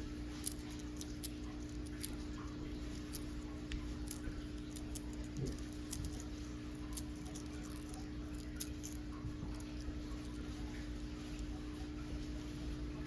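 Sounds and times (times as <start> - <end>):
steady low hum: 0.0 - 13.0
light clicks of metal parts: 0.3 - 10.5.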